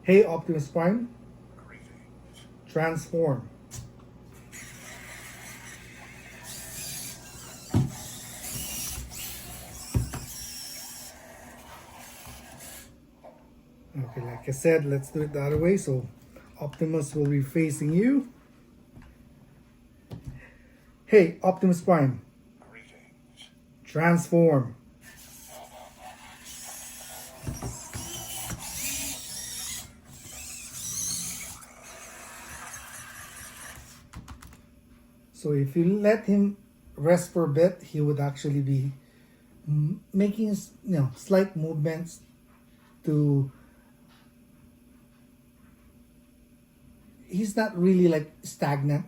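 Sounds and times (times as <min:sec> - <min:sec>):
robot toy servo motors whirring: 0:04.4 - 0:12.9, 0:25.0 - 0:34.0.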